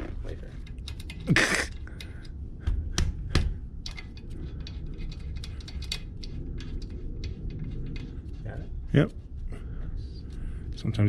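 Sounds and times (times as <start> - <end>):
light irregular clicks: 0.6 - 8.1.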